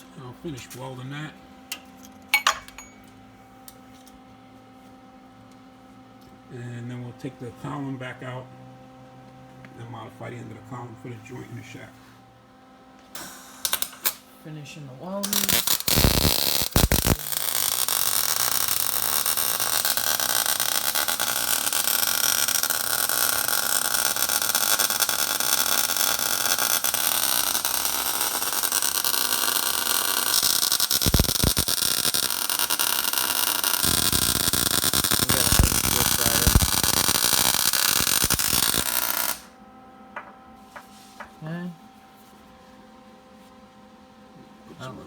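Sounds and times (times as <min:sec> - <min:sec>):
arc welder crackling hiss: 0:13.1 - 0:14.2, 0:15.2 - 0:39.5.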